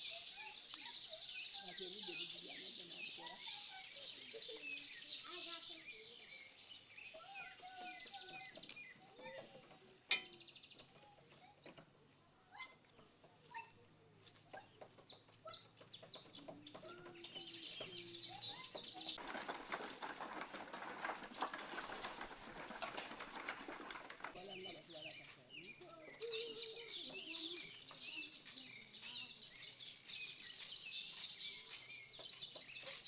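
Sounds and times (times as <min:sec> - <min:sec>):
small birds chirping: 0:00.0 - 0:20.1, 0:21.4 - 0:33.0.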